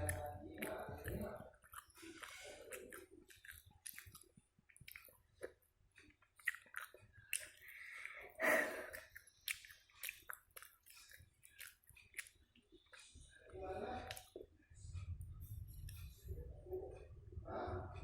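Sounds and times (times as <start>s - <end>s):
wet mouth clicks and smacks: 0.0s - 8.3s, 8.9s - 13.1s, 14.0s - 14.5s
person chewing food: 0.0s - 16.4s.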